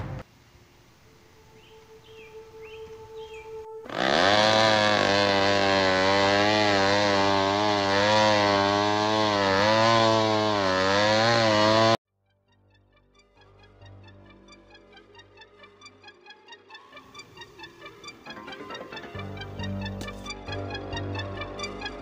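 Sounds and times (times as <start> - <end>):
chainsaw engine running: 3.8 - 12.0.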